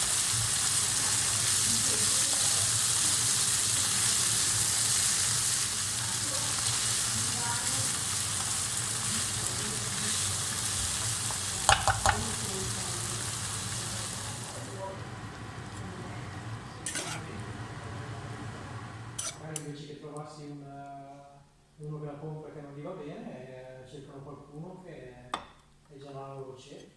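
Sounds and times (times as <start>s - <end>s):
food sizzling in a pan: 0.0s - 19.7s
utensil clacking against pan: 11.0s - 12.5s.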